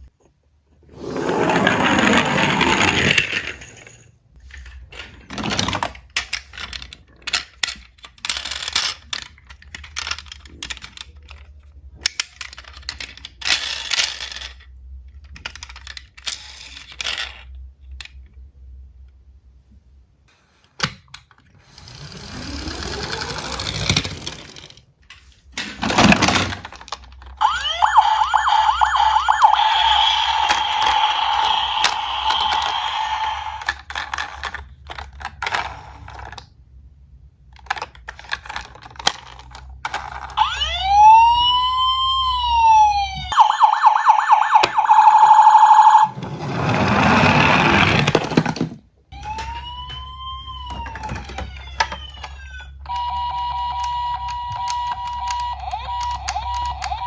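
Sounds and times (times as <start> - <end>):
toy cars clinking and rattling: 1.0 - 18.5, 21.3 - 40.8, 45.5 - 49.8, 50.6 - 57.0
wailing siren: 27.4 - 33.6, 40.4 - 46.3, 49.2 - 57.0.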